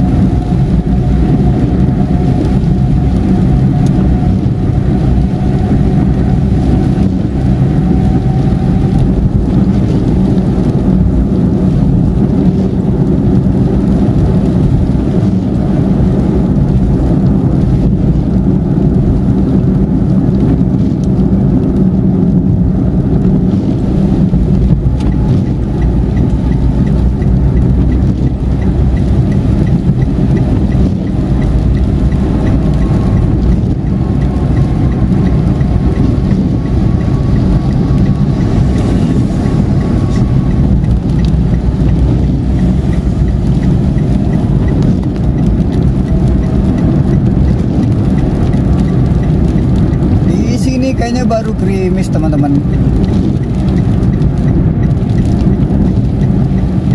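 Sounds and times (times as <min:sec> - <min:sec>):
car driving at highway speed: 0:00.0 - 0:56.9
faint regular ticking: 0:23.0 - 0:56.9.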